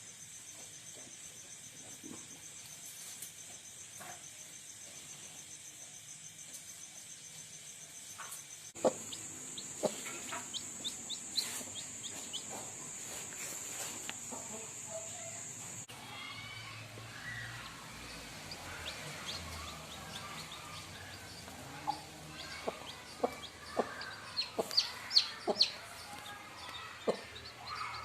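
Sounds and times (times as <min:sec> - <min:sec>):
crickets chirping: 0:00.0 - 0:28.0
chicks peeping: 0:08.8 - 0:15.8, 0:16.4 - 0:28.0.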